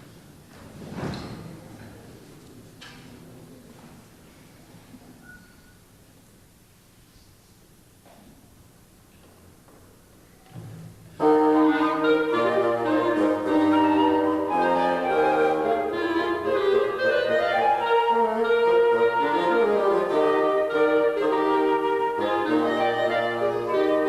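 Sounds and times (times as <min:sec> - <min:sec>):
woodwind quartet playing: 0:11.1 - 0:24.0.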